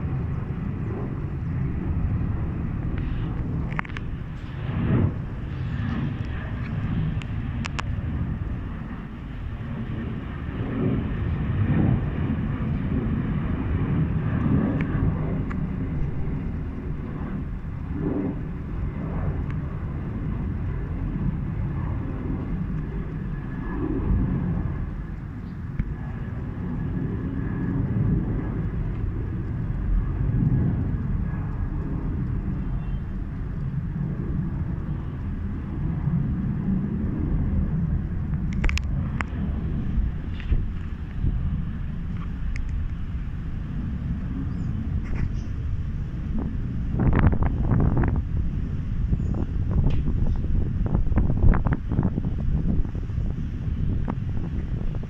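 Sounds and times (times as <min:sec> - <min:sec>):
jet engine cabin rumble: 0:00.0 - 0:55.0
rushing air: 0:00.0 - 0:55.0.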